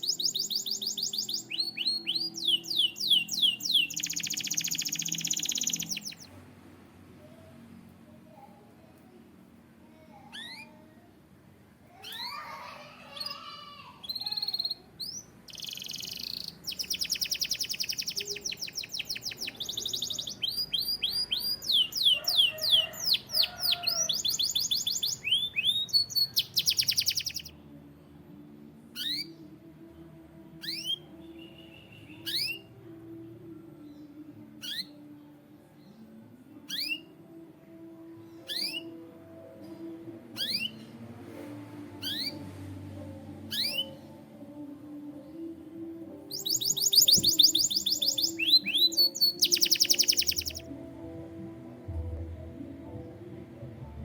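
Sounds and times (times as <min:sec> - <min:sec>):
canary singing trills and chirps: 0:00.0 - 0:06.4, 0:10.1 - 0:10.9, 0:12.0 - 0:27.6, 0:28.9 - 0:29.5, 0:30.5 - 0:32.9, 0:33.8 - 0:35.2, 0:35.9 - 0:39.4, 0:40.4 - 0:41.0, 0:42.0 - 0:42.5, 0:43.4 - 0:44.3, 0:46.2 - 0:50.7.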